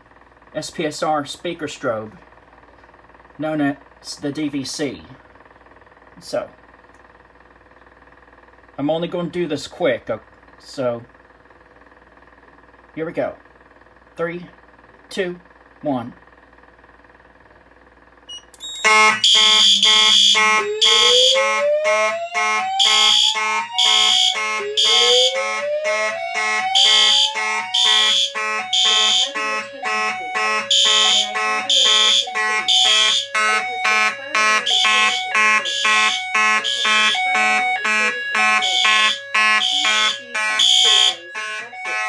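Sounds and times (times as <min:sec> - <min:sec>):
pulsing alarm horns: 0:18.3 - 0:42.0.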